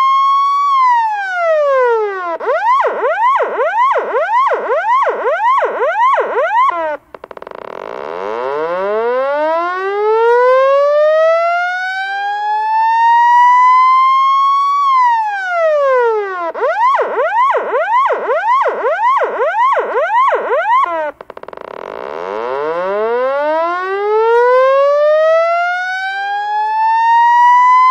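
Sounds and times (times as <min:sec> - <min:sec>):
police siren wailing and yelping: 0:00.0 - 0:07.1, 0:08.2 - 0:21.3, 0:22.3 - 0:27.9.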